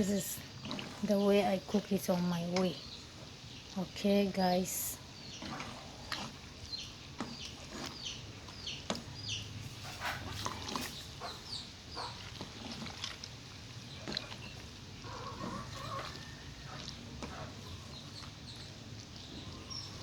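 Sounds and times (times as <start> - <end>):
chickens chirping and clucking: 6.6 - 12.8, 14.3 - 20.0.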